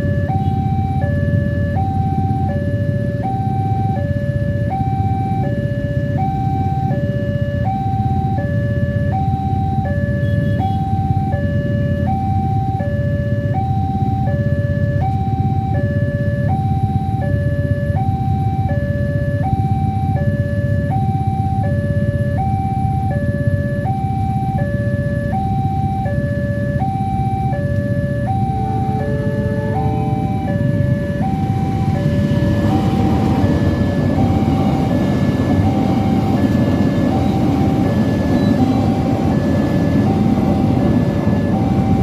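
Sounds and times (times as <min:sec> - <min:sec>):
level crossing two-tone alarm: 0:00.0 - 0:42.0
steady low rumble: 0:26.7 - 0:42.0.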